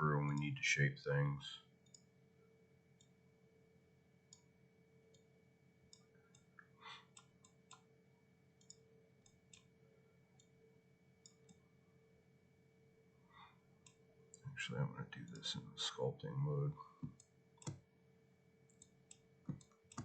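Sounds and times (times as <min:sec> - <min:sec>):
low electrical hum: 0:00.0 - 0:20.0
computer mouse clicks: 0:01.8 - 0:02.1, 0:05.9 - 0:07.9, 0:08.6 - 0:09.7, 0:11.2 - 0:11.6, 0:17.0 - 0:17.8, 0:18.7 - 0:20.0.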